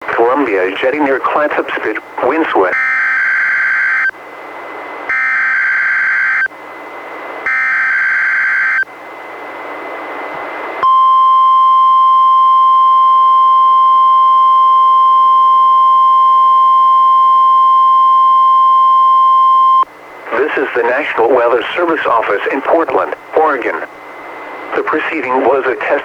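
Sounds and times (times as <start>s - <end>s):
radio hiss: 0.0s - 2.8s, 20.2s - 26.0s
steady warning alarm tone: 1.4s - 4.2s, 5.1s - 9.0s, 10.8s - 26.0s.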